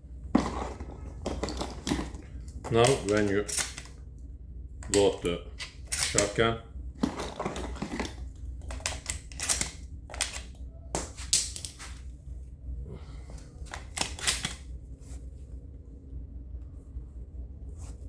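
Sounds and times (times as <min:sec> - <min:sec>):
shells loaded into shotgun clicking: 0:02.7 - 0:03.9, 0:04.8 - 0:06.4, 0:08.6 - 0:11.8, 0:13.7 - 0:14.6.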